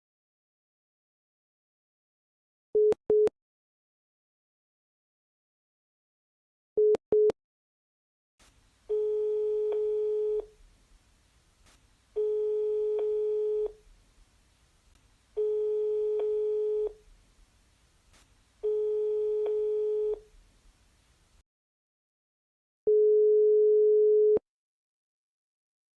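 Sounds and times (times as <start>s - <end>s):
faint line hiss: 8.4s - 12.4s, 13.0s - 15.5s, 16.2s - 19.3s
telephone ringback tone: 8.9s - 10.5s, 12.2s - 13.8s, 15.4s - 17.0s, 18.6s - 20.2s.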